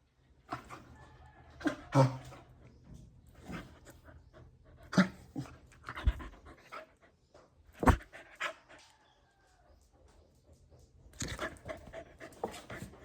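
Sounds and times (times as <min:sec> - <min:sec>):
puppy panting: 0:03.4 - 0:07.2.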